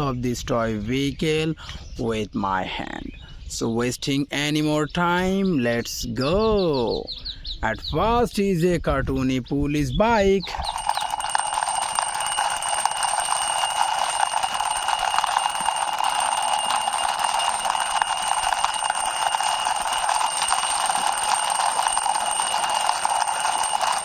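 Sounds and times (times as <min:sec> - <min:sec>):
toy wheels rattling on wall: 0:10.5 - 0:24.0.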